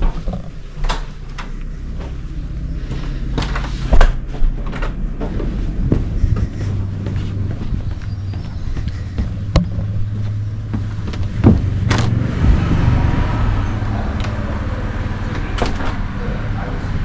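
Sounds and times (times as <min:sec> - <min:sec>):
knocks and clatters: 0:00.0 - 0:02.3, 0:02.9 - 0:13.0
low engine drone: 0:00.0 - 0:17.0.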